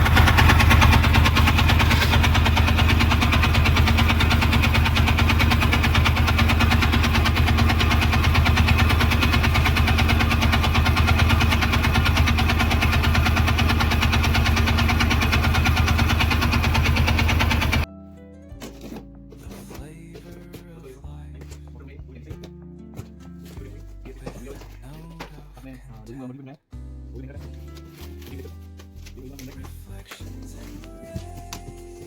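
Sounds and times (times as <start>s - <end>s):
diesel engine idling: 0.0s - 17.9s.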